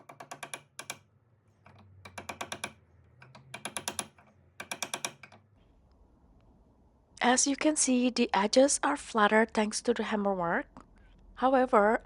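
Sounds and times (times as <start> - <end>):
metal hammer tapping ring: 0.0 - 1.0, 1.7 - 5.4.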